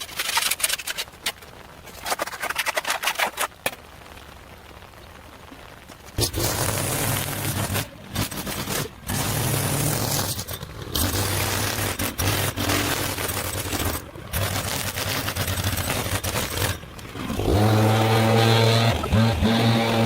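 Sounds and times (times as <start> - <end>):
rough scraping and clattering: 0.0 - 3.8, 6.2 - 20.0.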